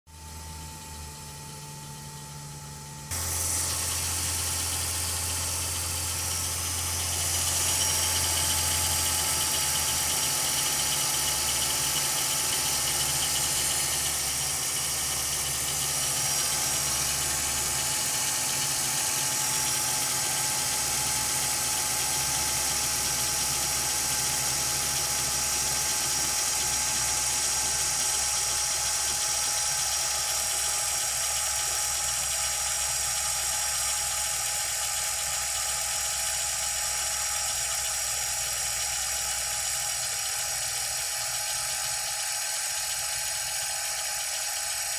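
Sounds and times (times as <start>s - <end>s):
car engine idling: 0.1s - 42.0s
engine knocking: 0.1s - 44.9s.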